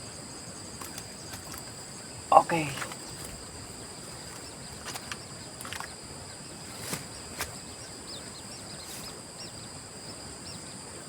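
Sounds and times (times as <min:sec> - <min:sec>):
crickets chirping chorus: 0:00.0 - 0:11.0.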